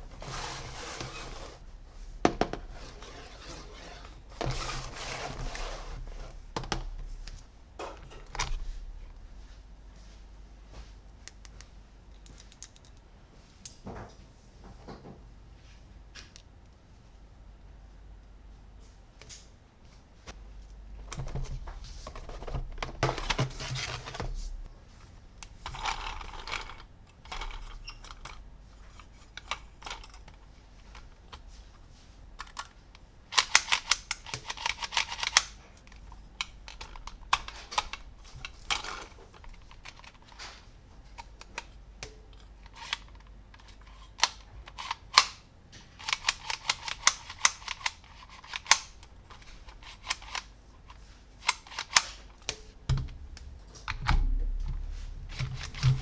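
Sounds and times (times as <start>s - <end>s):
plastic toy parts clicking and rattling: 12.2s - 13.1s, 21.1s - 24.5s, 25.4s - 31.6s, 32.4s - 52.5s, 55.3s - 56.0s.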